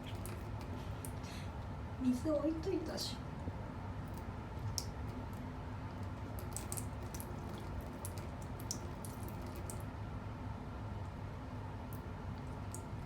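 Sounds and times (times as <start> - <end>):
cat lapping water: 0.0 - 1.4, 4.0 - 9.9
low steady hum: 0.0 - 13.0.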